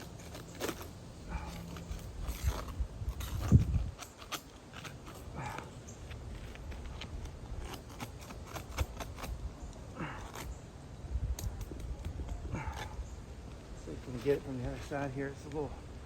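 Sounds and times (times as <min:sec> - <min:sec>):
wind rumbling on microphone: 0:00.0 - 0:05.6, 0:06.2 - 0:15.0
shingles tearing loose: 0:00.0 - 0:09.4.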